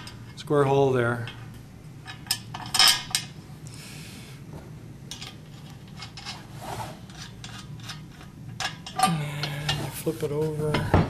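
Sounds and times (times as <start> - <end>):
metal parts scraping: 5.1 - 10.1.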